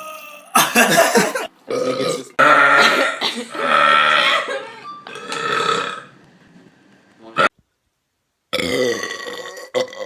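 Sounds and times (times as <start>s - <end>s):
person belching loudly: 1.7s - 4.4s, 5.1s - 6.1s, 8.5s - 10.0s.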